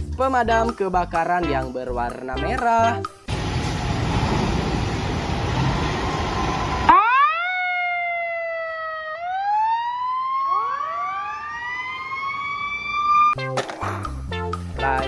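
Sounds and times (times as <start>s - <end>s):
music: 0.0s - 3.3s, 13.4s - 15.0s
fire engine siren wailing: 3.3s - 13.4s.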